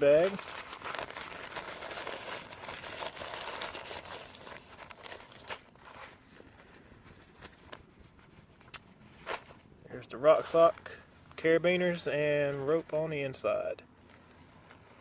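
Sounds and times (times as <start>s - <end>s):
nylon bag crinkling: 0.0s - 7.7s.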